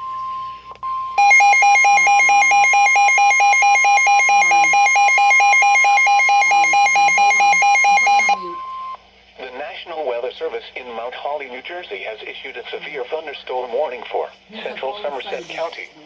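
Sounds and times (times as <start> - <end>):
harsh alarm beeping: 0.0 - 9.0.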